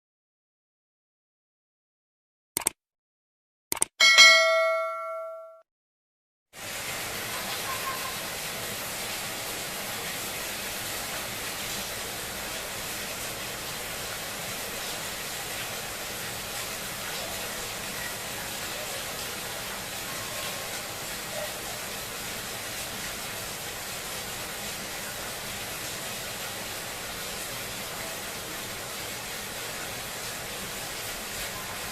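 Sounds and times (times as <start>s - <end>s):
short clicks: 2.6s - 2.8s, 3.7s - 4.0s
bell-like chime: 4.0s - 5.6s
steady rain hiss: 6.6s - 31.9s.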